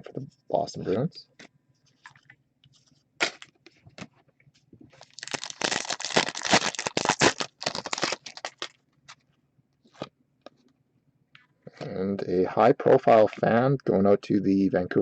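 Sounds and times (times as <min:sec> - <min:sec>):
wrapper crinkling and tearing: 0:05.0 - 0:08.8.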